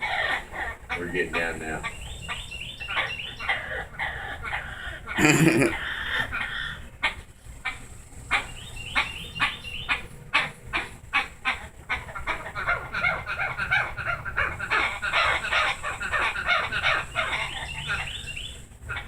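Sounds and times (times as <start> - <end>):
parrot calling and chattering: 0.0 - 19.0.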